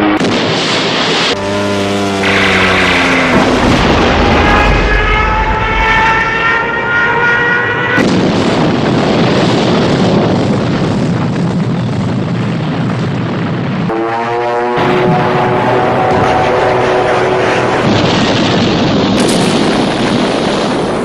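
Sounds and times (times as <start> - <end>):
rising siren-like whine: 0.0 - 8.1, 13.9 - 18.5
rumble of explosions and gunfire: 0.0 - 21.0
sudden blast: 2.2 - 21.0.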